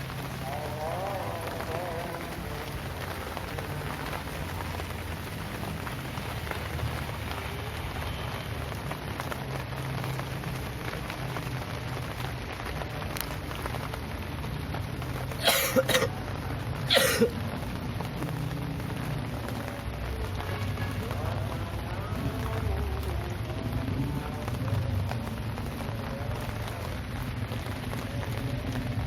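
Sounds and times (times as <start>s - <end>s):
steady rain falling: 0.0s - 29.0s
person coughing: 15.4s - 16.2s, 16.9s - 17.4s.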